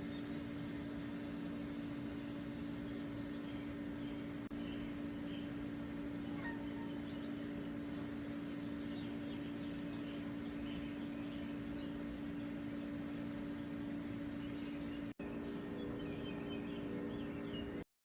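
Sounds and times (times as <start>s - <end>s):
mechanical hum: 0.0s - 17.9s
faint bird chirps: 2.8s - 17.8s.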